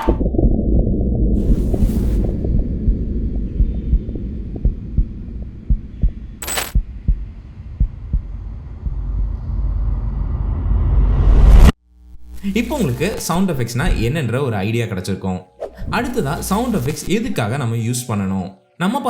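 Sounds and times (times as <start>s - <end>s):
low rumble: 0.0s - 11.8s.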